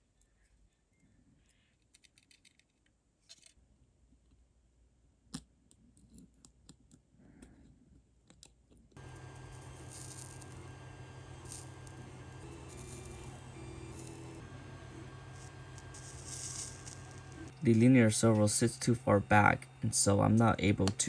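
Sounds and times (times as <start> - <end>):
steady hum: 9.0 - 21.0.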